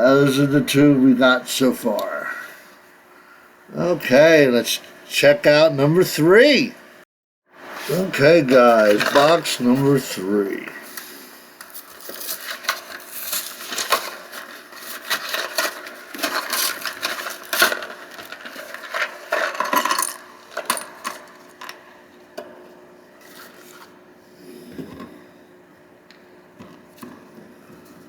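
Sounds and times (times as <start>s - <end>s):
cardboard box crackling and tearing: 12.0s - 19.5s.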